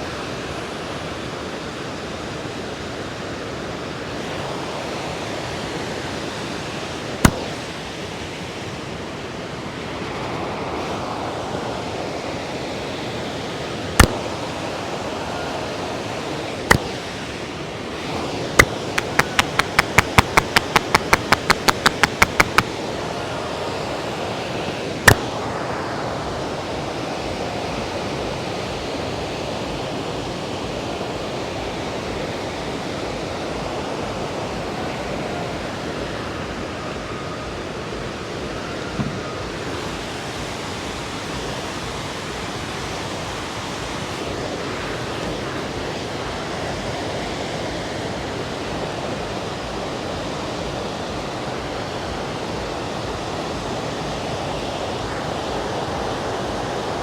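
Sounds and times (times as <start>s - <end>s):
river water rushing: 2.2s - 57.0s
sharp slaps on head: 7.2s - 7.6s, 14.0s - 14.3s, 16.7s - 17.0s, 18.6s - 22.7s, 25.1s - 25.3s
sharp crack: 7.2s - 7.7s, 14.0s - 14.5s, 16.7s - 17.2s, 18.6s - 22.7s, 25.1s - 25.4s.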